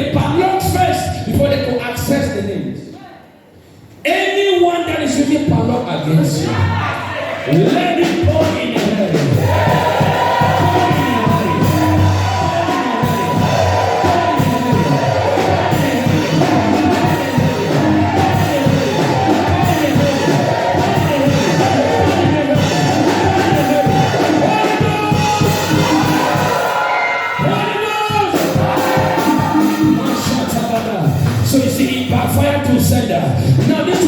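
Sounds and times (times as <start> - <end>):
congregation shouting and singing: 6.3 - 32.7
background music: 9.1 - 32.6.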